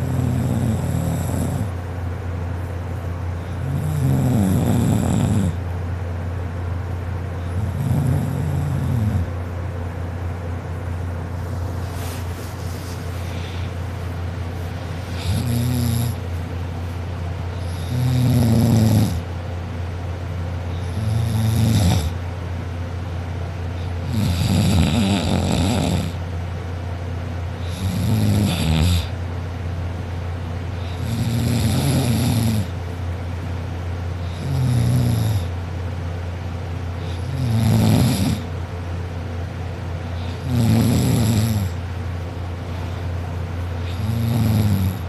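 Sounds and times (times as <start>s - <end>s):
person snoring: 0.0s - 1.8s, 3.5s - 5.6s, 7.5s - 9.3s, 15.1s - 16.2s, 17.6s - 19.2s, 20.7s - 22.2s, 24.0s - 26.2s, 27.6s - 29.2s, 30.8s - 32.8s, 34.2s - 35.5s, 37.0s - 38.5s, 40.2s - 41.8s, 43.8s - 45.0s
steady low hum: 0.0s - 45.0s.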